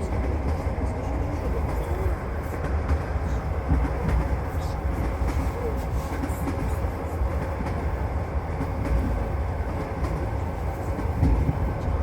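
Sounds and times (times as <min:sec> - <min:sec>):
train wheels rumbling on rails: 0:00.0 - 0:12.0.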